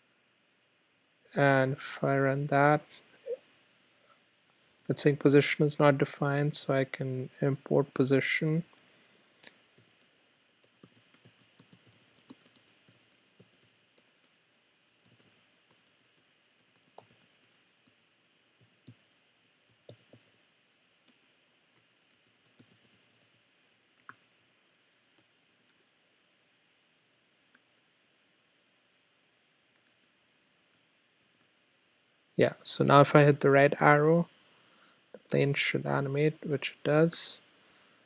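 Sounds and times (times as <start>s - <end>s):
low steady hiss: 0.0s - 38.0s
keyboard and mouse clicks: 9.8s - 14.4s, 15.0s - 18.0s, 18.6s - 20.3s, 21.8s - 23.4s, 24.0s - 24.2s.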